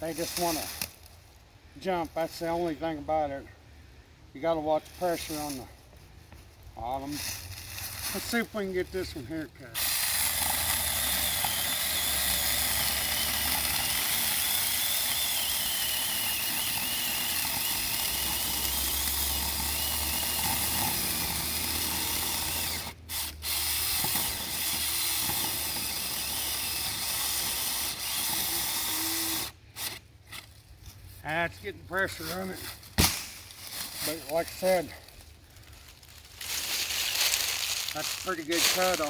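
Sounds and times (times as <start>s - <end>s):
mini chainsaw cutting wood: 9.7s - 30.1s, 36.4s - 39.0s.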